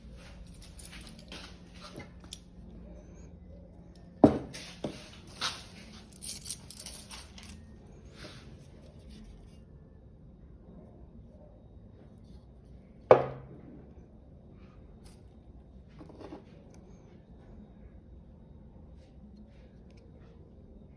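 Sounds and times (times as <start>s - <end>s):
objects rustling and clicking: 0.1s - 2.6s, 4.4s - 9.5s.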